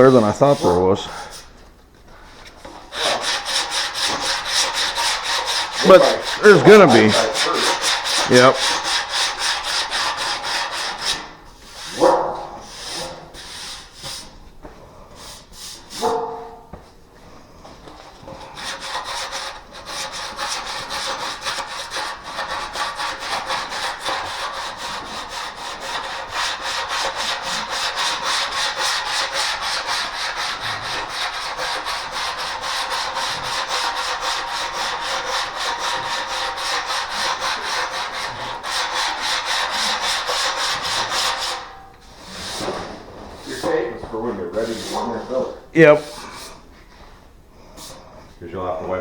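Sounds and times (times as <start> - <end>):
sanding block on car panel: 3.0 - 12.0, 18.6 - 41.7.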